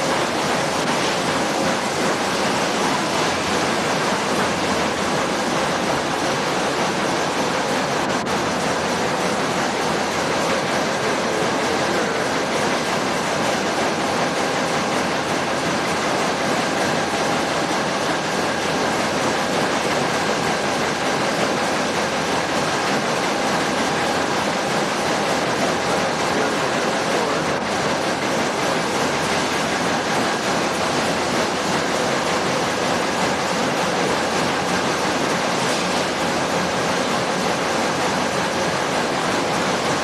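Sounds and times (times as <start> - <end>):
factory machinery roar: 0.0 - 40.0.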